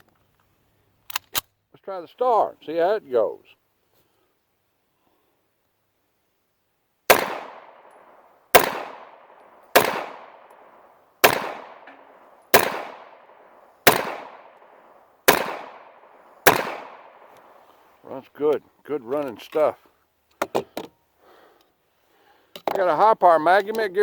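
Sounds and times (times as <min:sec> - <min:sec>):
pistol shots with echo: 0:07.1 - 0:17.6.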